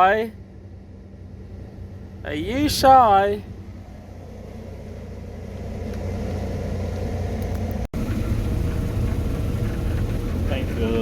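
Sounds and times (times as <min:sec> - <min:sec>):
combine harvester droning: 0:00.0 - 0:11.0.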